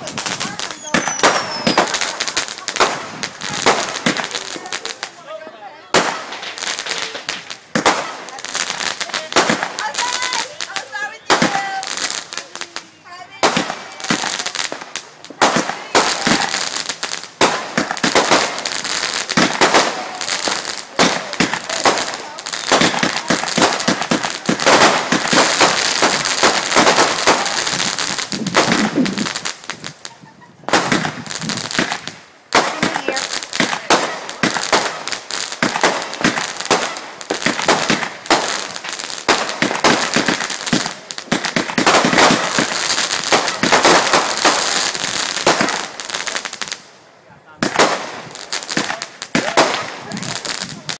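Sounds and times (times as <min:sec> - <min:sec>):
fireworks bangs and crackling: 0:00.0 - 0:50.9.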